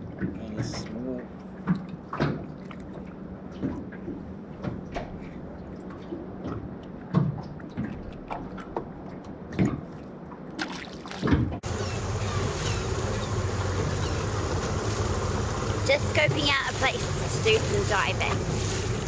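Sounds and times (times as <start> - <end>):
water sloshing against boat hull: 0.0 - 19.0
boat knocks and clicks: 1.5 - 19.0
wind rushing on microphone: 11.6 - 19.0.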